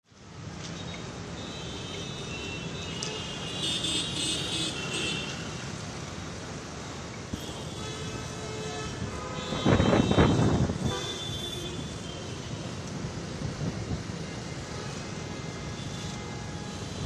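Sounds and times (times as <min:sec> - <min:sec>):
street traffic: 0:00.0 - 0:17.0
car horns: 0:07.3 - 0:12.6.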